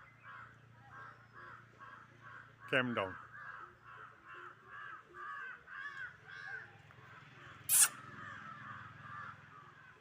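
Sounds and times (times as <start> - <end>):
crow cawing: 0.2 - 10.0
brief sharp noise: 7.7 - 8.0.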